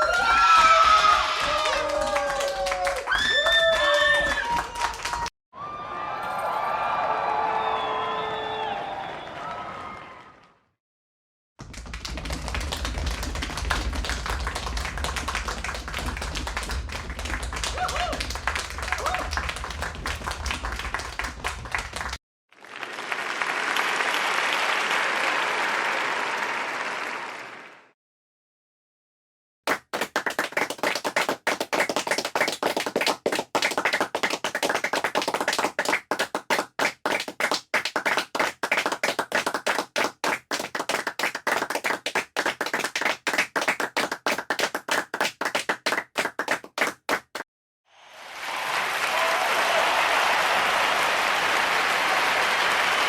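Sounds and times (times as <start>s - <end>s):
crowd applause: 0.0s - 5.3s, 6.0s - 10.4s, 11.6s - 27.9s, 29.7s - 47.4s, 48.0s - 53.0s
sparse clapping: 11.6s - 22.2s, 29.7s - 47.4s.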